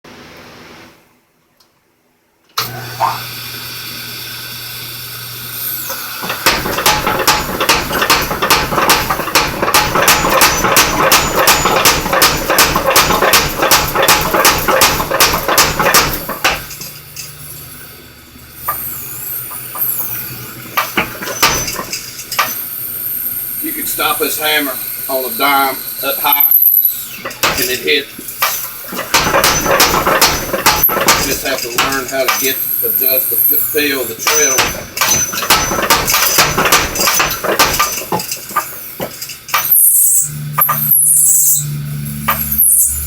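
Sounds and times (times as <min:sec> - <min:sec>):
power hammer motor running: 0:02.6 - 0:17.6, 0:18.6 - 0:43.0
power hammer blows: 0:05.8 - 0:17.0, 0:20.6 - 0:22.6, 0:23.9 - 0:43.0.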